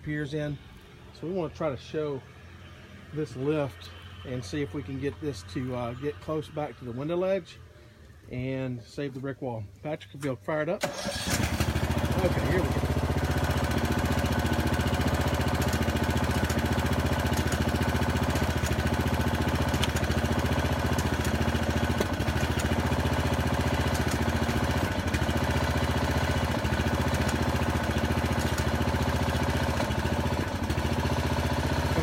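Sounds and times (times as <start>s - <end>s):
small gas engine running: 10.8s - 32.0s.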